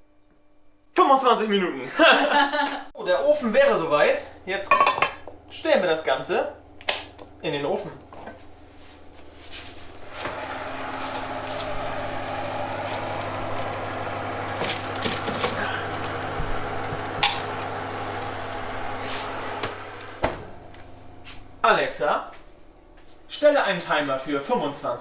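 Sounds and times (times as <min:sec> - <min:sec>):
appliance fan motor whirring: 0:05.4 - 0:22.2.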